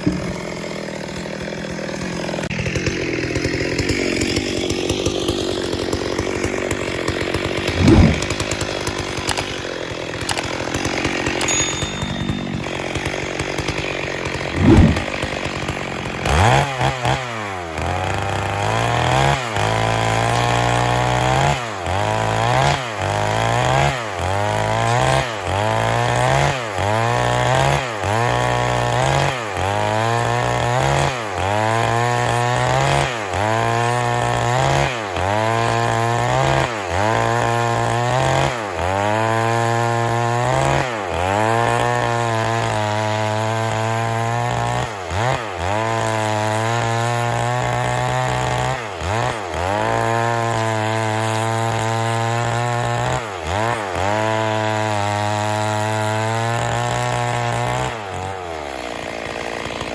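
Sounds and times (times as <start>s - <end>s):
chainsaw engine revving: 0.0s - 59.9s.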